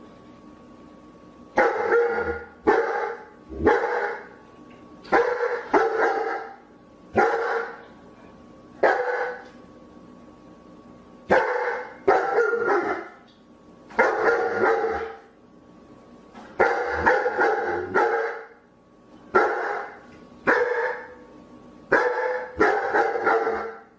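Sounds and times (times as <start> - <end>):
dog barking: 1.6 - 4.3, 5.1 - 6.6, 7.2 - 7.8, 8.8 - 9.5, 11.3 - 13.2, 13.9 - 15.2, 16.6 - 18.6, 19.3 - 21.2, 21.9 - 23.9.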